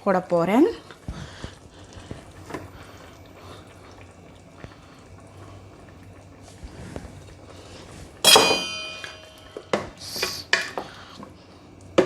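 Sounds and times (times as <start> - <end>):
metal spoon clanking on pot: 8.2 - 9.9.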